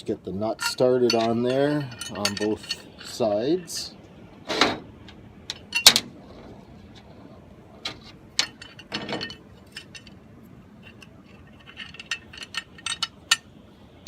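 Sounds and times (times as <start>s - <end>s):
small metal parts clinking: 0.5s - 3.9s, 5.1s - 6.1s, 7.8s - 10.2s, 10.8s - 13.6s.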